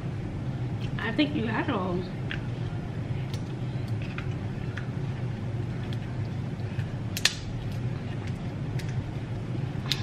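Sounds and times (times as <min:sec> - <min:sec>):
steady low hum: 0:00.0 - 0:10.0
crab shell cracking: 0:07.1 - 0:09.0.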